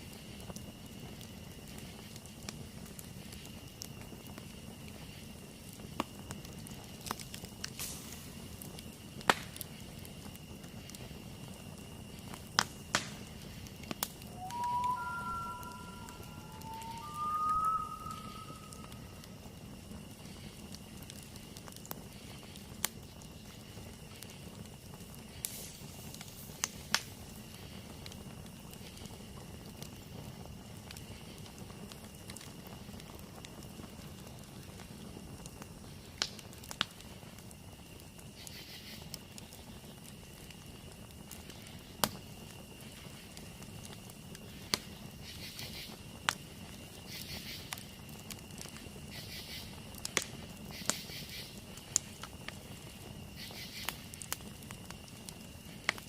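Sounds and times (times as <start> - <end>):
burning wood crackling and popping: 0.0 - 56.0
campfire hissing: 0.0 - 56.0
high-pitched hum: 14.3 - 19.2.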